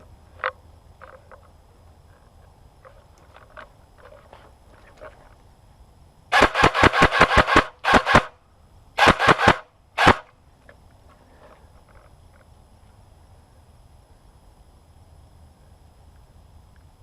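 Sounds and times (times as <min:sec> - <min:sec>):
airsoft gun firing: 0:06.3 - 0:08.4, 0:09.0 - 0:10.3.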